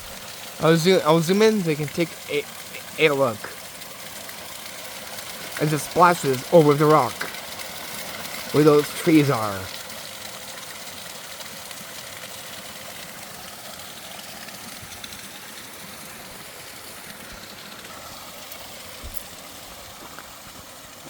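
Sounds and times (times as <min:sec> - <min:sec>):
creek water splashing over rocks: 0:00.0 - 0:21.0.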